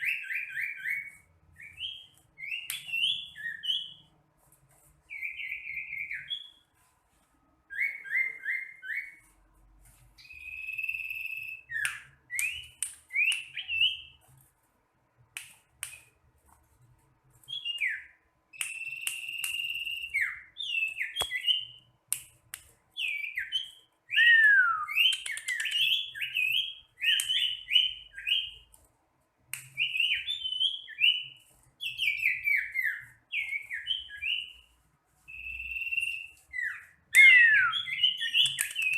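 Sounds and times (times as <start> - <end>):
bird singing whistled notes: 0.0 - 4.1, 5.1 - 6.7, 7.7 - 9.3, 10.2 - 14.2, 17.5 - 21.9, 23.0 - 28.6, 29.7 - 34.7, 35.3 - 38.9.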